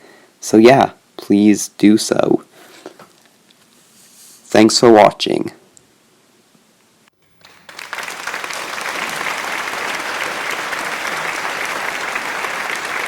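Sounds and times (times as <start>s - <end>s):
crowd applause: 7.4s - 13.0s.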